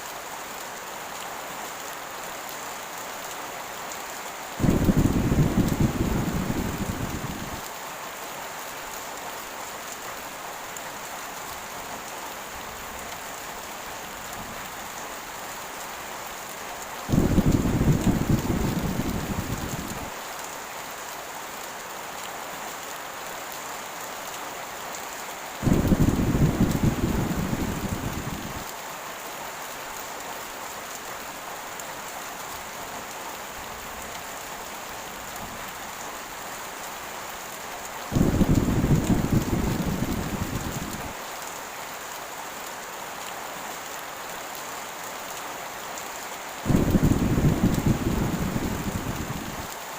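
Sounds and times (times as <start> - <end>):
heavy rain: 0.0 - 49.9
thunder rumbling: 4.6 - 7.6, 17.1 - 20.1, 25.6 - 28.6, 38.1 - 41.1, 46.7 - 49.7.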